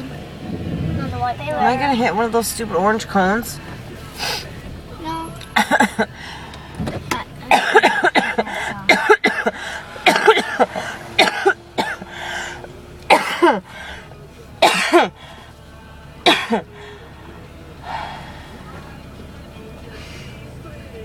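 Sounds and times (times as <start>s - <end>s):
person coughing hard: 5.6s - 6.1s, 7.5s - 12.1s, 13.1s - 13.6s, 14.6s - 15.1s, 16.3s - 16.6s.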